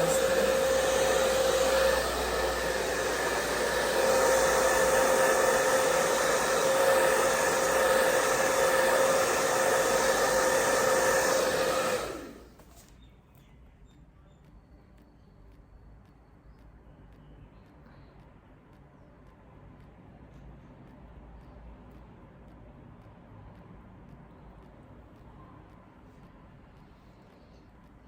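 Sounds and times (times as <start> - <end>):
hair dryer blowing: 0.0 - 12.8.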